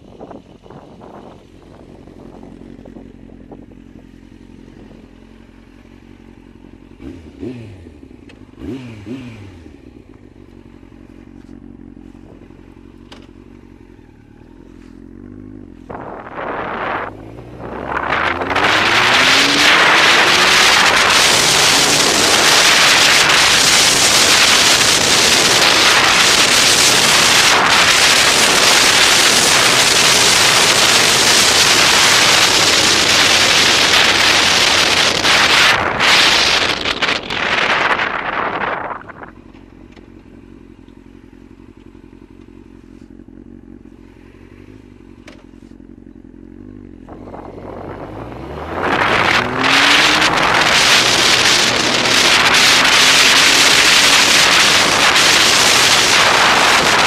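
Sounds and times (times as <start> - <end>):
wind noise on camera: 0.0 - 4.1, 15.8 - 39.5, 47.1 - 57.0
motorcycle engine revving: 0.0 - 57.0.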